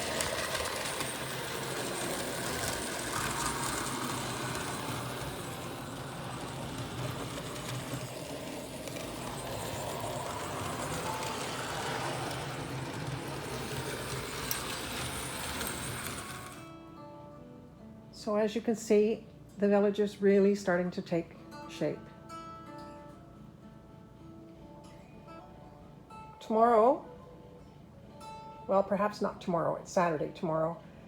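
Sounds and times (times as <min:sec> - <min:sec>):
electric motor whir: 0:00.0 - 0:16.7
wheels rattling over rails: 0:00.0 - 0:16.7.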